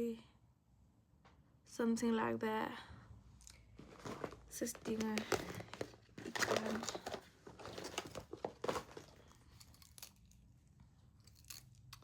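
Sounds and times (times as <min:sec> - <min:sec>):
crinkling and rustling: 0:03.4 - 0:10.4.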